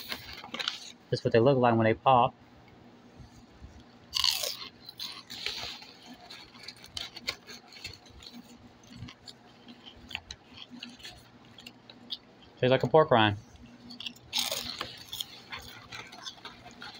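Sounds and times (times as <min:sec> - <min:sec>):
crunchy food being chewed: 0:00.0 - 0:01.0, 0:03.8 - 0:16.9
loud bite crunch: 0:04.1 - 0:12.6, 0:13.7 - 0:16.9.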